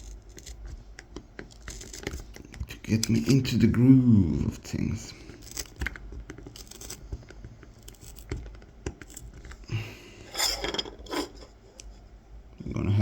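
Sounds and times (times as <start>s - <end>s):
knife scratching wood: 0.0s - 3.6s, 5.1s - 7.1s, 10.2s - 12.0s
hissing scrape: 9.8s - 11.8s.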